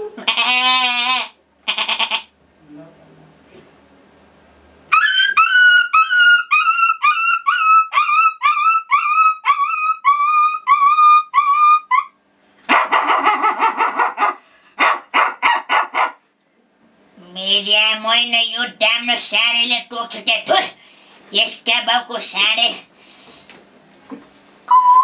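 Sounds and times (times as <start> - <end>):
boy imitating dog barks: 4.9 - 12.1.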